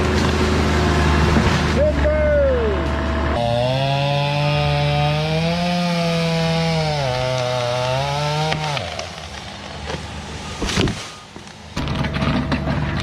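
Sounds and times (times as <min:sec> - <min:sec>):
chainsaw cutting wood: 0:03.3 - 0:13.0.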